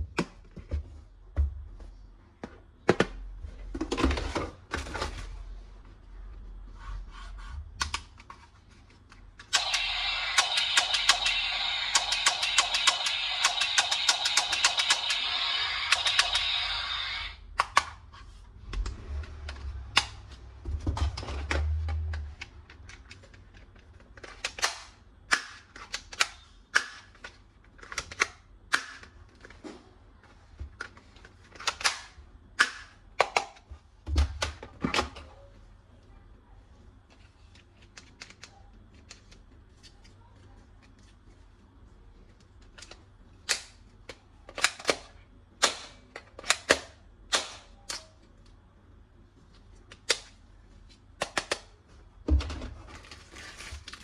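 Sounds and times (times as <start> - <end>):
plastic toy gun clicks: 9.5 - 16.5.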